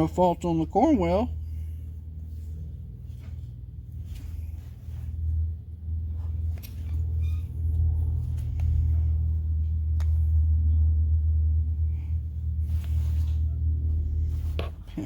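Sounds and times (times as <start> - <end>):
low rumble: 0.0 - 15.0.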